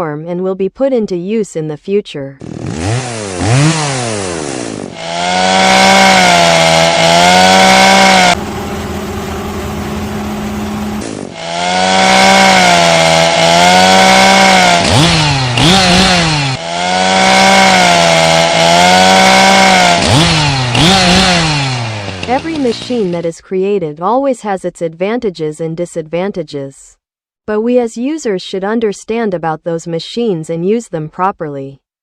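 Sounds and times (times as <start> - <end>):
chainsaw engine revving: 2.4 - 23.3.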